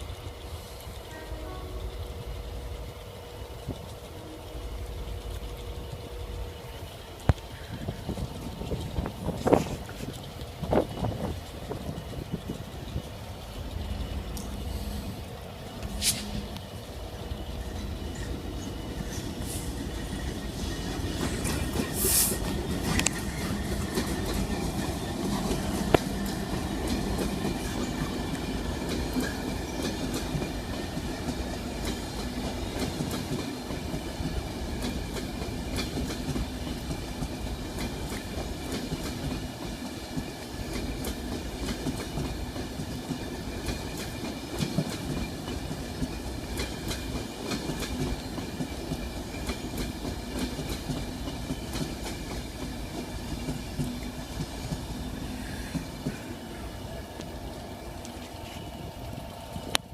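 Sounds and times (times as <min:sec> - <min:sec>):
train rolling past rumbling: 0:00.0 - 0:59.9
wheels clicking over rail joints: 0:00.0 - 0:59.9.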